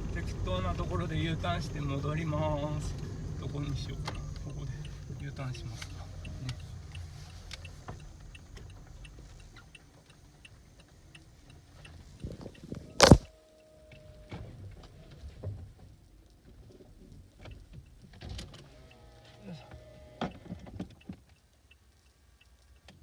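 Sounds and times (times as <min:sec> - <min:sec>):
turn signal ticking: 0:03.0 - 0:13.2
loud sharp knock: 0:13.0 - 0:13.2.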